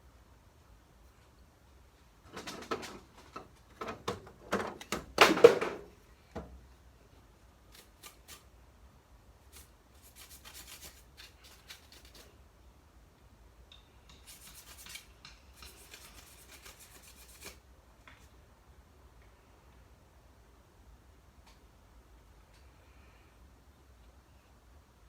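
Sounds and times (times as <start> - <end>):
rubbing and scraping of parts: 14.1 - 17.6.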